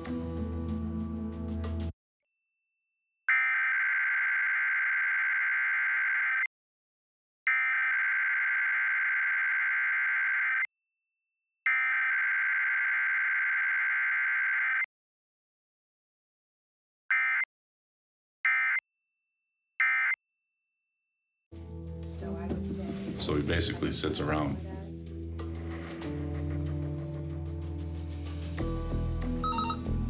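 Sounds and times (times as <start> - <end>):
digital data tone bursts: 29.4 - 29.9.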